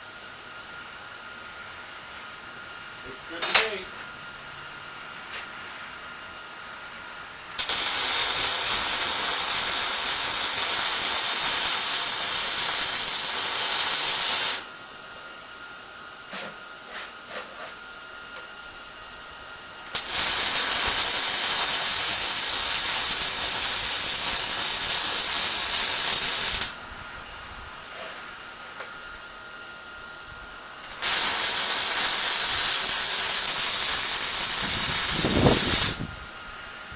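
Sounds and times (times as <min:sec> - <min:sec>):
welding arc hiss: 0:01.8 - 0:04.2, 0:05.2 - 0:14.8, 0:16.2 - 0:26.8, 0:30.8 - 0:36.9.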